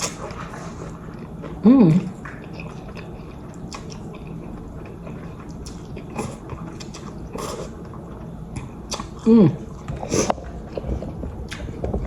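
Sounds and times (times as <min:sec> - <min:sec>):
chewing noodles: 0:00.0 - 0:11.9.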